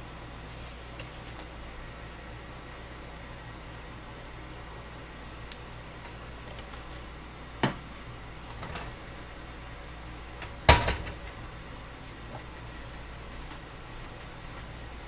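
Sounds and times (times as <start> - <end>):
steady low hum: 0.0 - 15.0
kitchen things knocking: 10.4 - 11.2.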